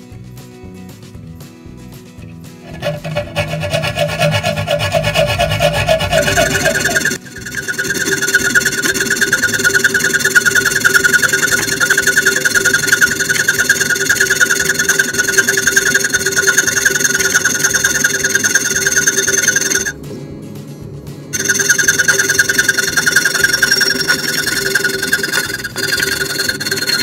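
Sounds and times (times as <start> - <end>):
hacksaw cutting metal bolt: 2.7 - 7.2.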